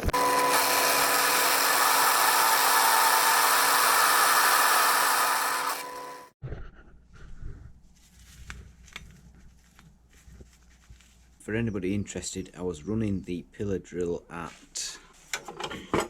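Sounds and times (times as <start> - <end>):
drill cutting hiss: 0.0 - 6.3
drill motor hum: 0.0 - 6.4.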